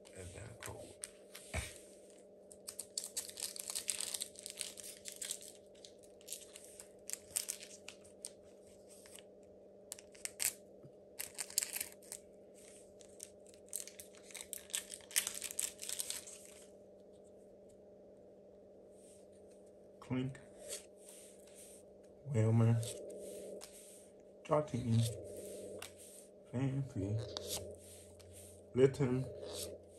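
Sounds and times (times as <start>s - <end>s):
faint steady hum: 0.0s - 29.9s
foil wrapper tearing and crinkling: 2.6s - 8.3s, 10.0s - 10.6s, 11.2s - 12.2s, 13.2s - 16.6s.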